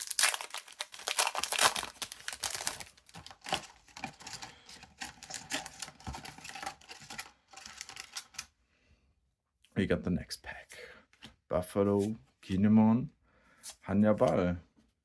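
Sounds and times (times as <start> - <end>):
cards clicking and rustling: 0.0 - 8.5
wrapper tearing and crinkling: 0.0 - 8.5.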